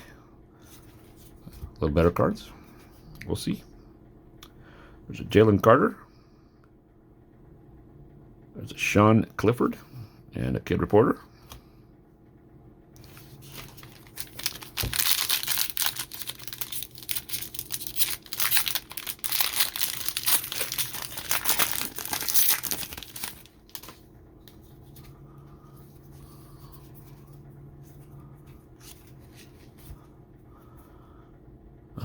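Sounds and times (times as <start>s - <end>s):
foil wrapper tearing and crinkling: 13.0s - 24.0s.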